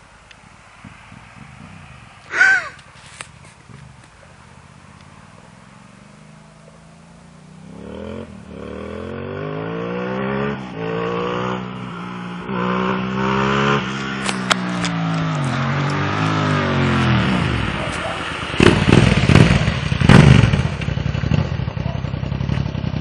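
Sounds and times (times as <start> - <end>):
motorcycle engine revving: 3.7 - 23.0
exhaust crack: 10.5 - 23.0.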